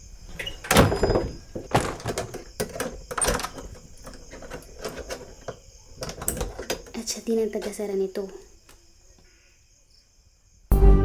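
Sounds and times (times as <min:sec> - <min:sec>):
door opening: 0:00.3 - 0:07.8
irregular clicks and knocks: 0:00.3 - 0:07.8.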